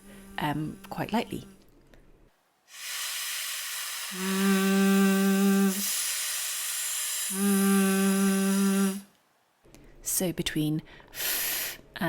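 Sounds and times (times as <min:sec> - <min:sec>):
woman holding f hiss: 0:02.7 - 0:09.1
woman holding v buzz: 0:02.7 - 0:09.1.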